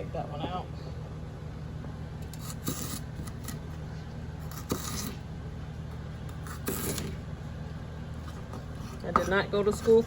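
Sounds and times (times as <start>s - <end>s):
steady low hum: 0.0s - 10.0s
onion skin rustling and scraping: 2.3s - 10.0s.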